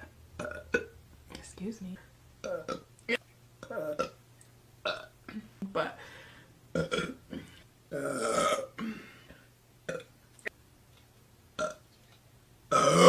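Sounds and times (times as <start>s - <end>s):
woman burping: 0.4s - 0.9s, 2.4s - 2.9s, 3.6s - 4.2s, 4.9s - 6.0s, 6.8s - 9.2s, 9.9s - 10.1s, 11.6s - 11.8s, 12.7s - 13.0s.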